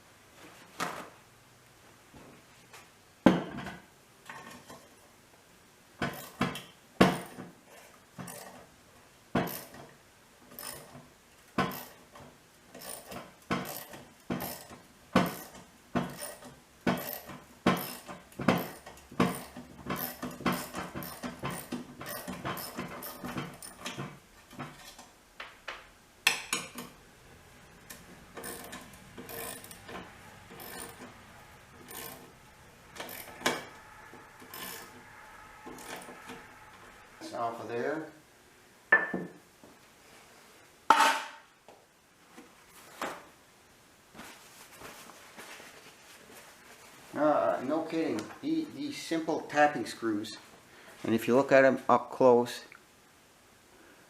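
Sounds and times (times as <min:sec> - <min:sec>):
ratchet wrench clicking: 0:12.8 - 0:23.9, 0:28.4 - 0:29.8, 0:30.5 - 0:31.0, 0:31.8 - 0:32.3, 0:33.0 - 0:33.6, 0:34.4 - 0:35.0.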